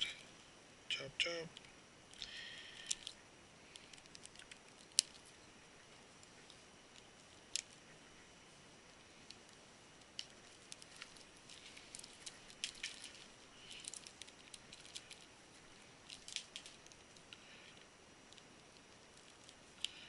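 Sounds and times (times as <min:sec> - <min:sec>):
hands handling cables: 0:09.2 - 0:20.0.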